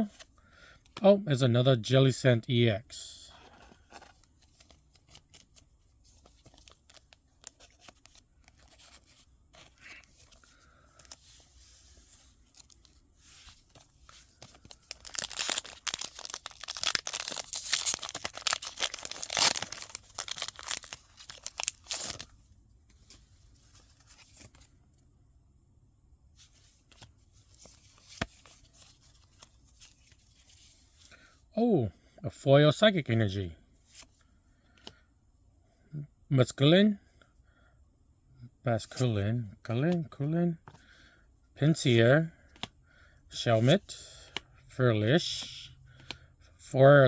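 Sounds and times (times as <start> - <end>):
handling of cards and packaging: 3.2 - 24.8, 26.4 - 31.2, 41.6 - 46.2
foil wrapper crinkling and tearing: 13.7 - 22.3.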